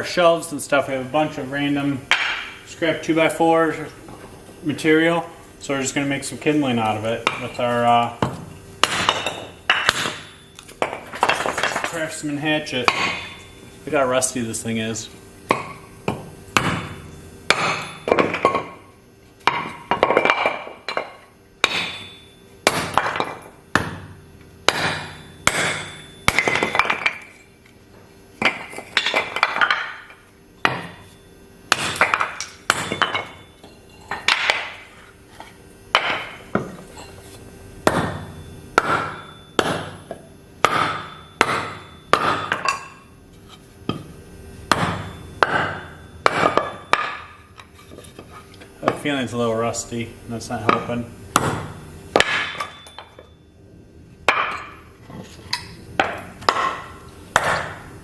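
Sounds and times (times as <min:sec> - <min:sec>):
hatchet chopping wood: 0:08.2 - 0:10.3, 0:15.5 - 0:18.7, 0:21.6 - 0:22.1, 0:22.7 - 0:27.0, 0:31.7 - 0:33.2, 0:34.3 - 0:34.8, 0:37.8 - 0:40.0, 0:40.6 - 0:42.6, 0:44.7 - 0:47.3, 0:51.3 - 0:52.7, 0:56.0 - 0:57.8.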